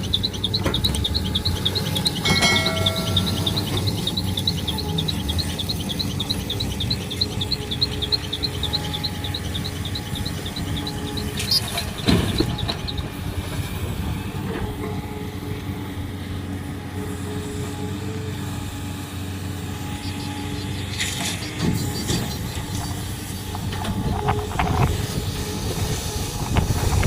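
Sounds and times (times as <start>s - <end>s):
insects chirping in a trill: 0.0s - 13.1s
heavy diesel machinery engine running: 0.0s - 27.0s.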